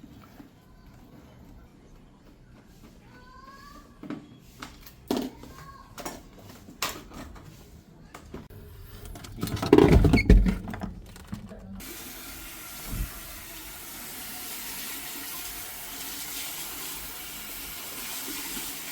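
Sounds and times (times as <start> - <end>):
handling knocks and thumps: 9.1 - 11.8
water running from tap: 11.8 - 18.9.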